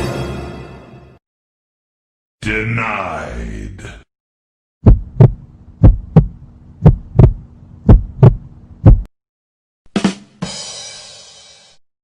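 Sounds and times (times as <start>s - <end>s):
heartbeat: 4.8s - 9.1s
steady hum: 4.8s - 9.1s.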